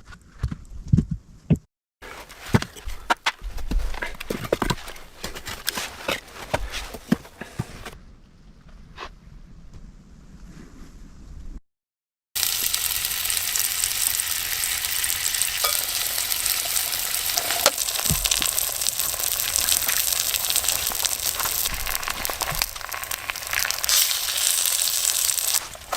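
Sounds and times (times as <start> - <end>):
food sizzling in a pan: 12.4 - 25.9
small pops and crackles: 17.3 - 25.9.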